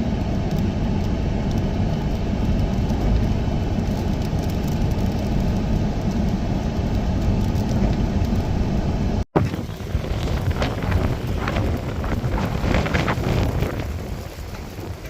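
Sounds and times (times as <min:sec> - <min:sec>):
storm wind: 0:00.0 - 0:15.0
wind rumbling on microphone: 0:00.0 - 0:15.0
surf: 0:09.4 - 0:15.0.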